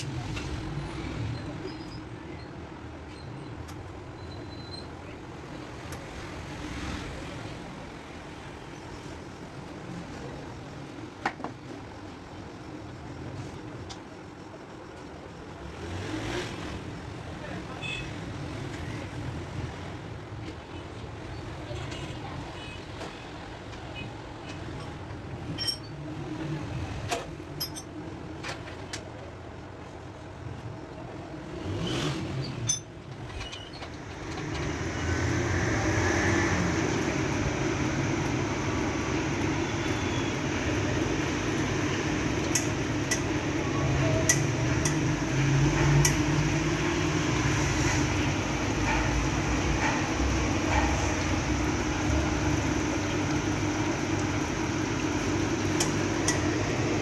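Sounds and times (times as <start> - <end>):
espresso machine humming and hissing: 33.9 - 57.0.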